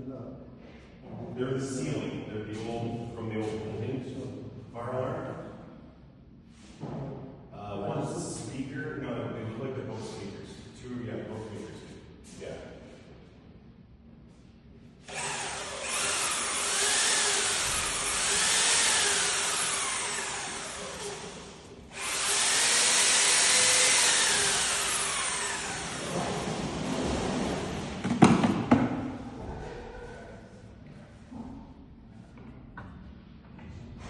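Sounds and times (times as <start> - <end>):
power tool running: 15.1 - 26.6.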